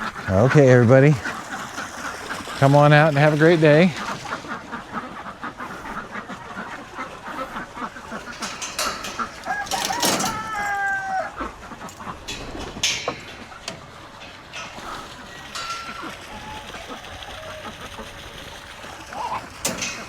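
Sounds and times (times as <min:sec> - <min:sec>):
chickens clucking: 0:00.0 - 0:20.0
chicken drawn-out call: 0:04.0 - 0:20.0.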